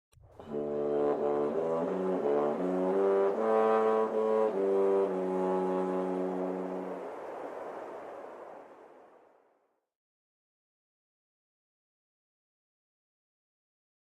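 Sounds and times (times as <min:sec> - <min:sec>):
brass instruments playing chords: 0:00.4 - 0:07.1.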